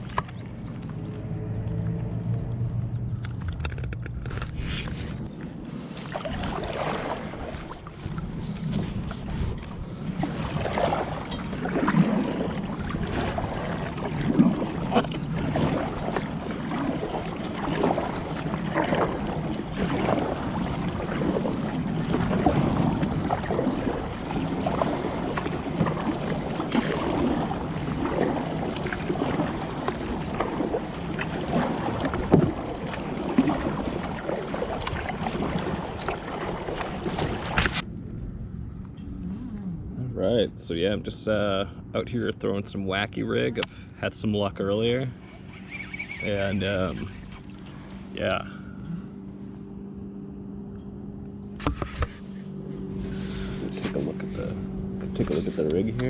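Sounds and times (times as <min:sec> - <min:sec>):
wind buffeting microphone: 0:00.0 - 0:41.1
water lapping against hull: 0:00.0 - 0:56.0.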